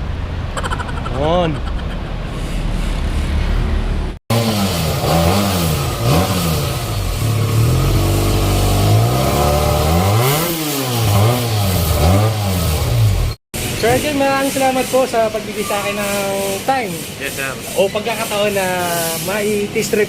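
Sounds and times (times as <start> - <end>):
motorcycle engine revving: 3.0 - 13.4.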